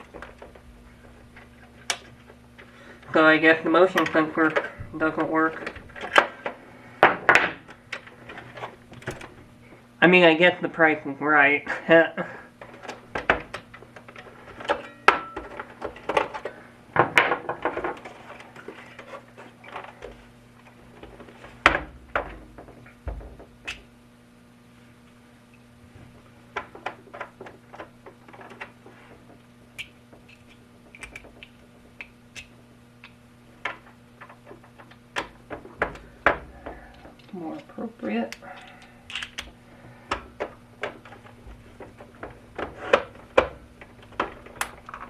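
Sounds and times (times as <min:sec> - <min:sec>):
low electrical buzz: 0:00.0 - 0:45.0
plastic parts clicking and knocking: 0:12.6 - 0:20.2, 0:26.5 - 0:37.8, 0:38.6 - 0:45.0.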